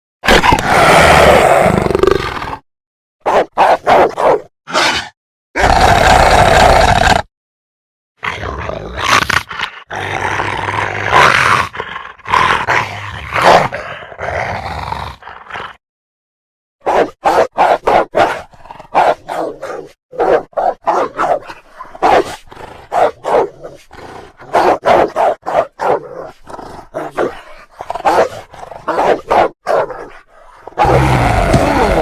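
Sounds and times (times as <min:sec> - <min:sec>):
wolf barking and snarling: 0:00.2 - 0:02.6, 0:03.2 - 0:07.3, 0:08.2 - 0:15.8, 0:16.8 - 0:32.0
wolf growling: 0:18.1 - 0:32.0.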